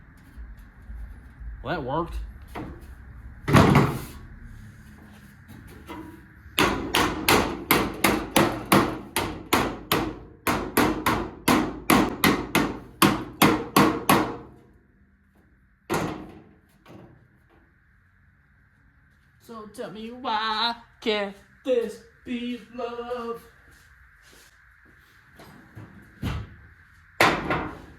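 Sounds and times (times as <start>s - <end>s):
hammer on sheet metal: 6.6s - 14.5s.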